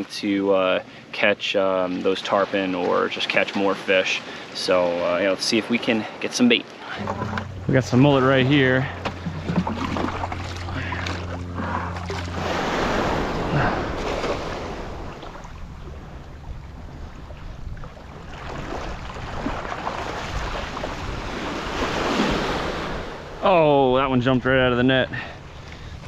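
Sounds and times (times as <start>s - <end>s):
ocean surf washing on beach: 1.9s - 25.7s
low steady hum: 6.9s - 18.4s
wind on microphone: 12.3s - 23.4s.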